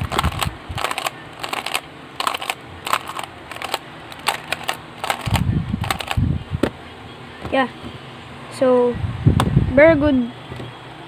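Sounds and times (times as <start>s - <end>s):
plastic puzzle clicking: 0.0s - 6.2s.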